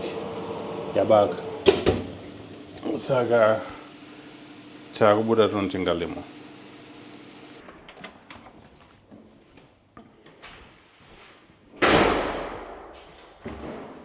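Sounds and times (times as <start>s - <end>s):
door slamming shut: 11.8s - 14.0s.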